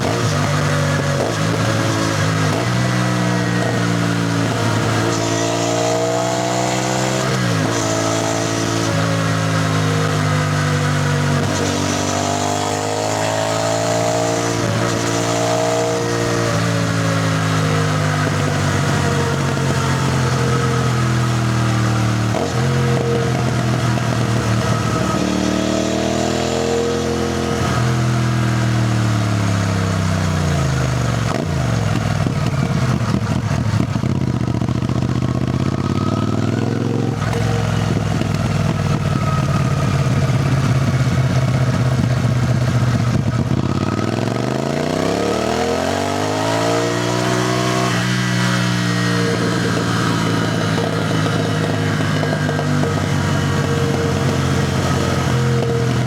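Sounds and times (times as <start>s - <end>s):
motorcycle engine revving: 0.0s - 56.0s.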